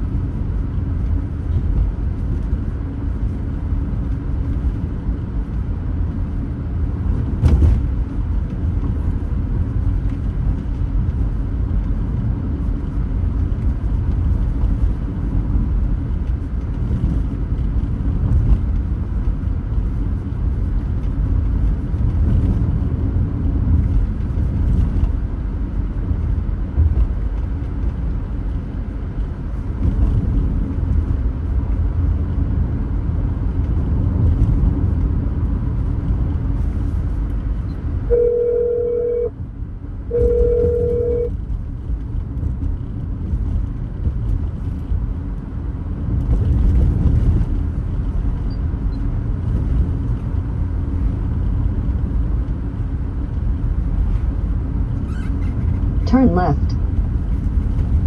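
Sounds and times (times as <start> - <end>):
car road and engine rumble: 0.0 - 58.0.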